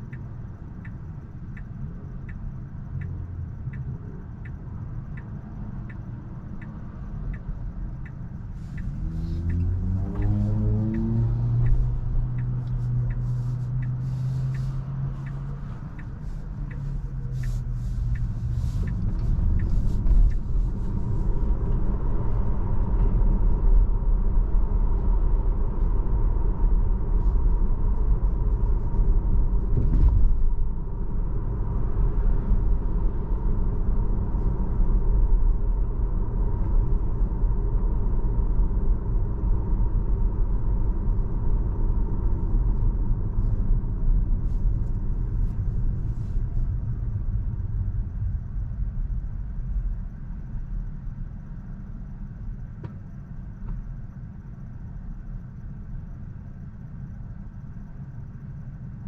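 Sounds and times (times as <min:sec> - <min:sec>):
road and tyre rumble: 0:00.0 - 0:59.0
sharp ticking: 0:10.9 - 0:20.4.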